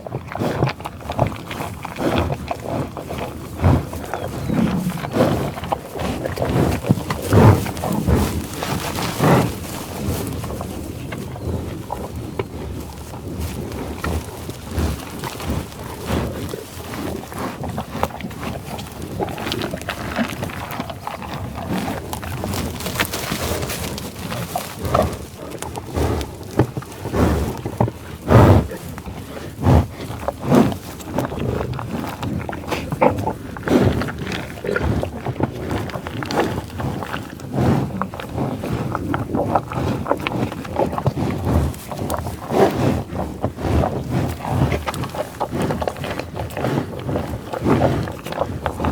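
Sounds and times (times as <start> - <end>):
buffalo grunting and bellowing: 0.0 - 48.9.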